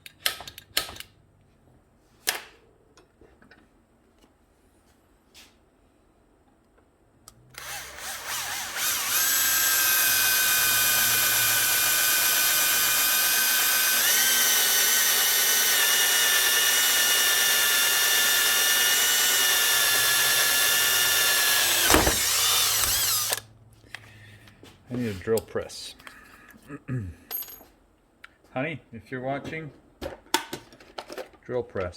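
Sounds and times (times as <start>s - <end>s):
electric drill boring steel: 7.6s - 23.4s.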